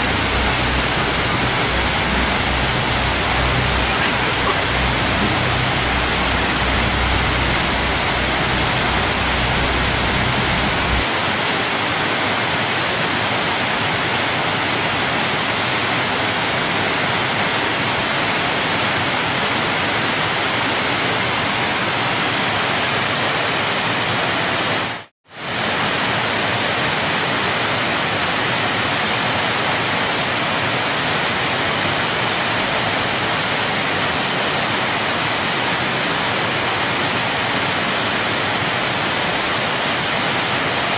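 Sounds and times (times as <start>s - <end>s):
deep low rumble: 0.0s - 11.0s
waterfall rushing: 0.0s - 22.7s, 23.4s - 40.9s.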